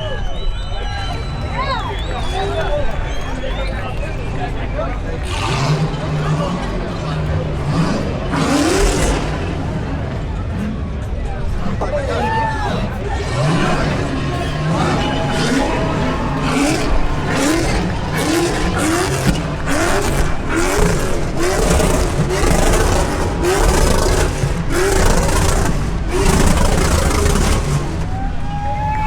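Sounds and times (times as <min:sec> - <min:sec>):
car engine revving: 0:04.0 - 0:28.5
tyre noise: 0:11.5 - 0:28.5.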